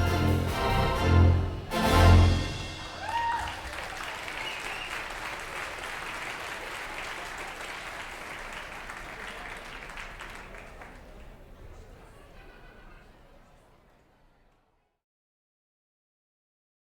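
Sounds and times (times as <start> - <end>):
audience applauding: 1.9 - 14.2
brief high cry: 2.9 - 3.7.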